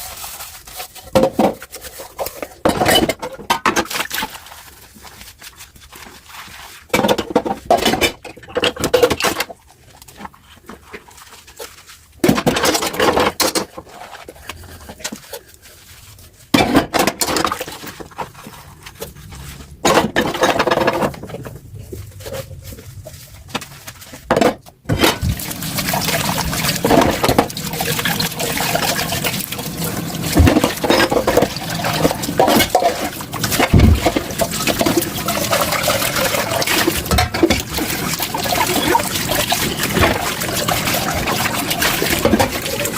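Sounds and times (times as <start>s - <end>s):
tap water running over dishes: 24.9s - 42.9s.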